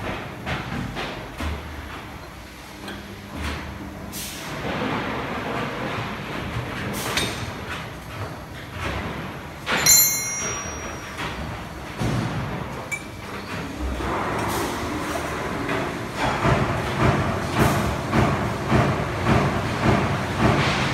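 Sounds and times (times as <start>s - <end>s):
factory machinery noise: 0.0s - 20.9s
metal clanks and knocks: 4.6s - 14.6s
metallic clang ringing: 9.7s - 11.4s.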